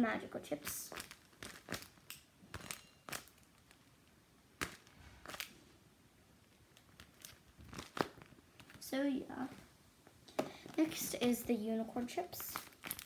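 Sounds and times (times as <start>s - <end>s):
paper crinkling: 6.5s - 8.9s, 12.2s - 13.0s.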